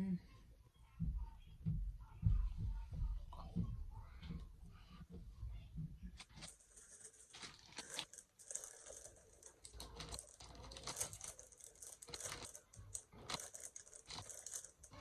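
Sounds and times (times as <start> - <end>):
crinkling and crackling: 5.9 - 15.0.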